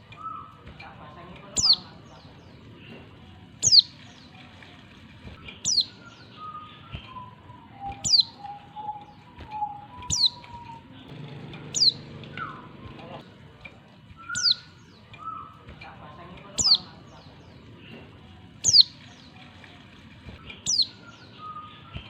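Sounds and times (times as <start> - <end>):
bird high descending call: 11.8 - 12.7.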